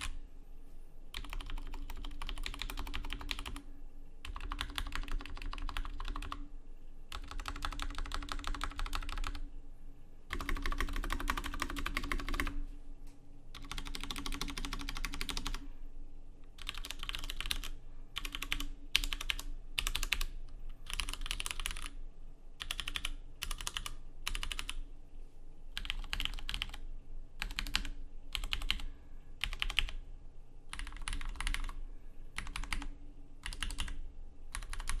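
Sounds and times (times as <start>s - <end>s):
mechanical keyboard typing: 0.0s - 0.2s, 1.1s - 3.6s, 4.2s - 6.4s, 7.1s - 9.4s, 10.3s - 12.6s, 13.6s - 15.6s, 16.6s - 22.0s, 22.6s - 24.8s, 25.8s - 26.8s, 27.4s - 30.0s, 30.7s - 31.8s, 32.4s - 35.0s.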